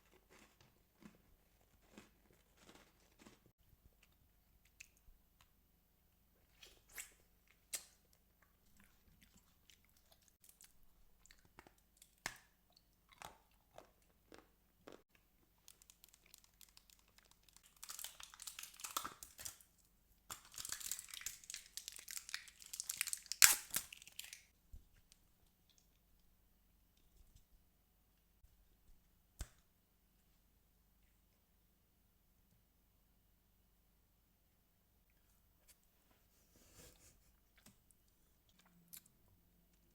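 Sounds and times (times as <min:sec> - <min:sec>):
crisp chewing crunches: 0:00.0 - 0:05.0, 0:08.4 - 0:19.6.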